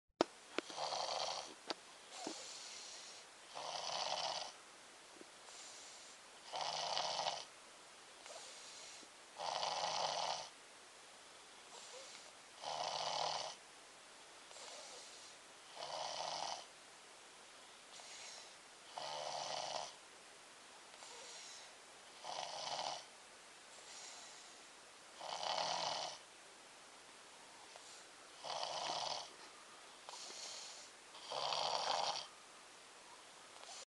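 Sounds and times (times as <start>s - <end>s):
person snoring: 0.6s - 4.6s, 5.6s - 7.5s, 8.2s - 10.5s, 11.7s - 13.6s, 14.5s - 16.7s, 17.9s - 20.0s, 21.0s - 23.1s, 25.2s - 26.2s, 27.7s - 29.3s, 30.1s - 32.3s
soft breathing: 0.6s - 4.6s, 5.4s - 6.4s, 8.2s - 9.2s, 11.3s - 12.4s, 14.4s - 15.8s, 17.5s - 20.0s, 20.9s - 21.8s, 23.7s - 24.9s, 27.4s - 32.4s, 33.0s - 33.9s.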